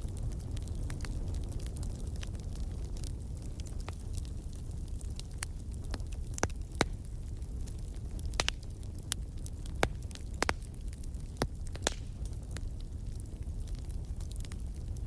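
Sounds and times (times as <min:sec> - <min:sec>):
burning logs crackling and popping: 0:00.0 - 0:15.0
low rumble of flames: 0:00.0 - 0:15.0.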